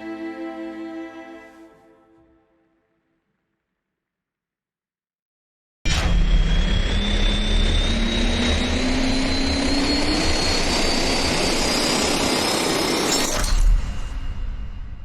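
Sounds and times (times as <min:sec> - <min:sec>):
rocket engine roar: 0:05.9 - 0:13.2.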